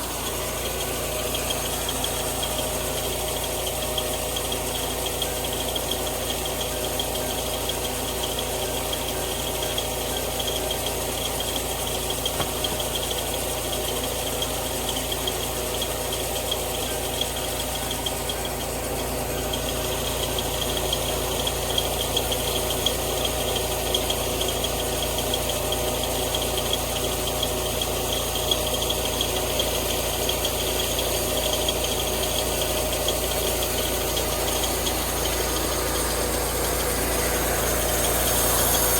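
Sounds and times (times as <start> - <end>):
sawmill motor drone: 0.0 - 38.9
blade cutting through log: 34.7 - 38.9.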